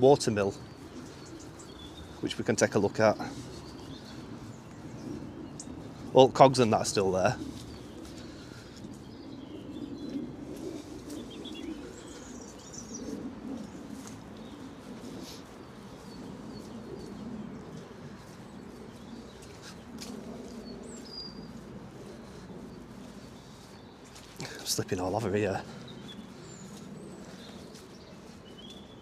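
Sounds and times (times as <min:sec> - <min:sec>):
small birds chirping: 0:00.0 - 0:29.0
light clicks and scuffs: 0:10.1 - 0:24.7.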